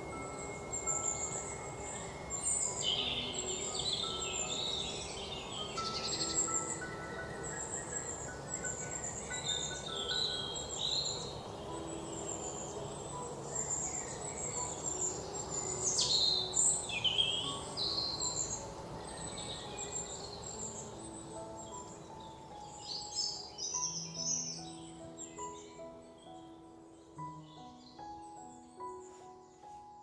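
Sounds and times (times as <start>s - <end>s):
birds chirping and whistling: 0.0s - 30.0s
soft slow instrumental music: 0.0s - 30.0s.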